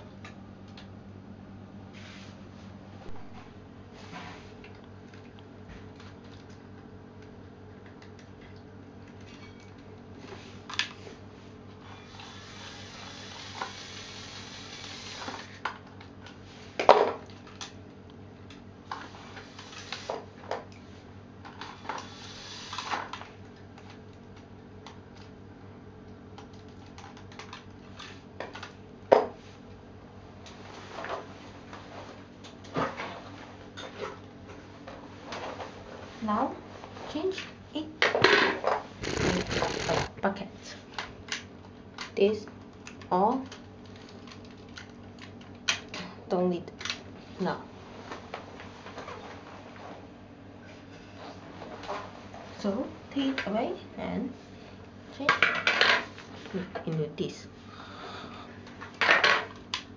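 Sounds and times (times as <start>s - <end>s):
steady low hum: 38.8s - 49.0s
rustling: 39.0s - 40.1s.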